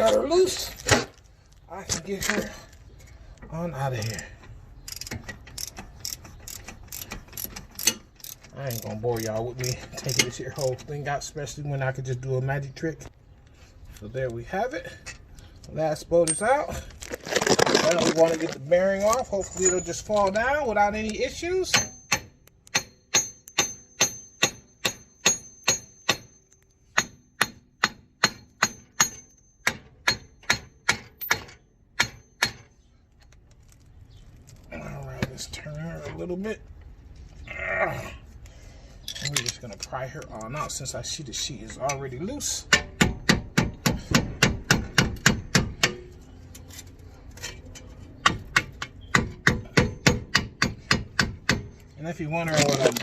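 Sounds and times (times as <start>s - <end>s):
hammer striking metal: 21.7s - 32.7s.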